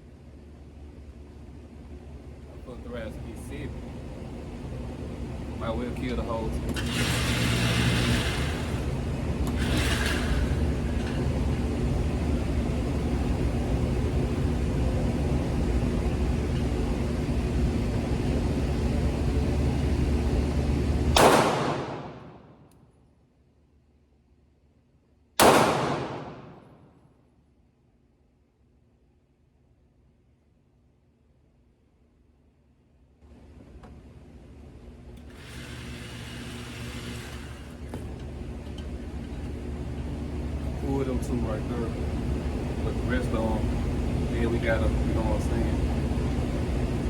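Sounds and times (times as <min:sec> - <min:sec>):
low rumble with hum: 0:00.0 - 0:47.0
pistol shot: 0:21.2 - 0:22.4, 0:25.4 - 0:26.9.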